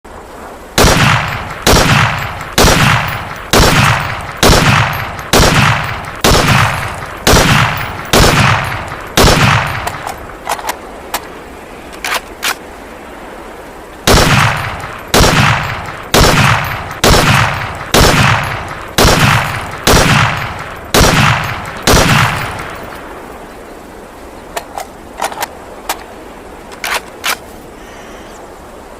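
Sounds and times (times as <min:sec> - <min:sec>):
rifle shots with echo: 0:00.8 - 0:10.1, 0:14.1 - 0:23.0.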